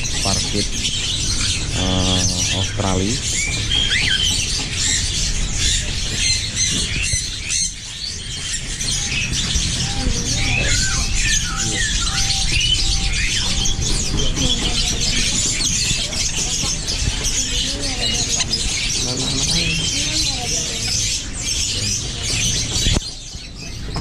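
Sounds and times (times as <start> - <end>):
budgerigars chirping and squawking: 0.0 - 24.0.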